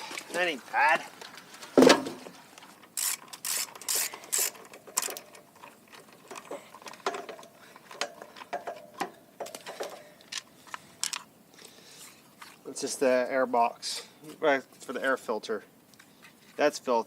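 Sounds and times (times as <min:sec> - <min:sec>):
ratchet wrench ratcheting: 0:03.0 - 0:05.4.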